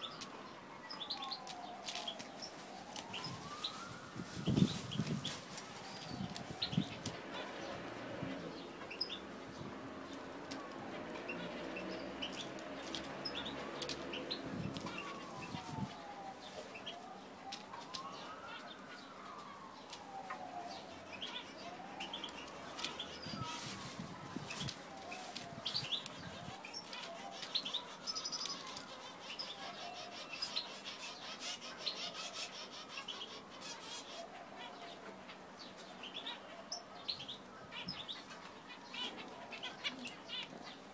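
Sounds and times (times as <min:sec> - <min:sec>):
siren wailing: 0:00.0 - 0:07.8, 0:13.4 - 0:31.0.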